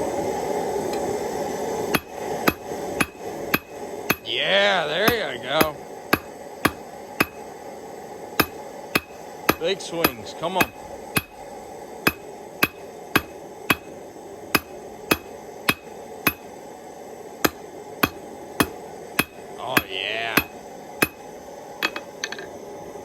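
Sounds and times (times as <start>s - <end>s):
hammer ringing on anvil: 2.0s - 4.3s, 5.0s - 7.4s, 8.4s - 11.4s, 12.1s - 13.9s, 14.6s - 16.5s, 17.4s - 21.2s.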